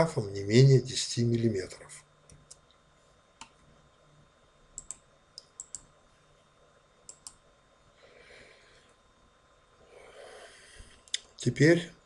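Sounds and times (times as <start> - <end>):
faint sharp clicks: 4.8 - 5.9, 7.1 - 7.4.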